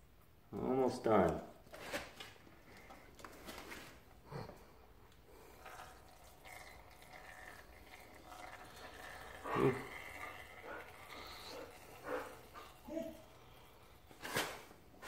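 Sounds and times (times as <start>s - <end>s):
oil trickling into a pan: 5.3s - 12.8s.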